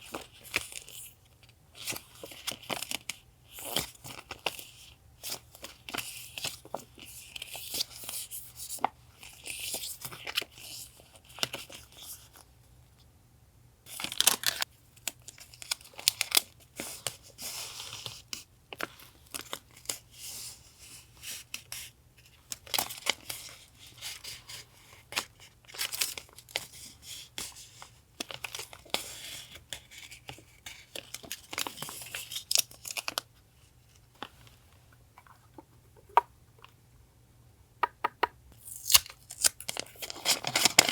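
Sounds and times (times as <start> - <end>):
small taps and clicks: 37.8 - 38.4.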